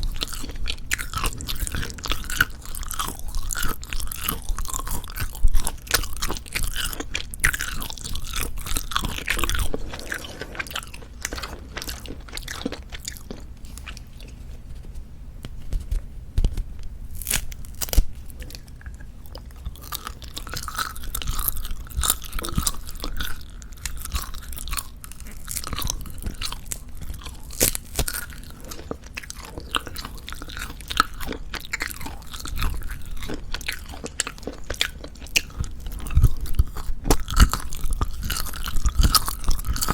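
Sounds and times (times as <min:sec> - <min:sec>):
chewing dry jerky: 0:00.0 - 0:14.6, 0:15.8 - 0:39.9
crackly tearing: 0:15.9 - 0:18.9.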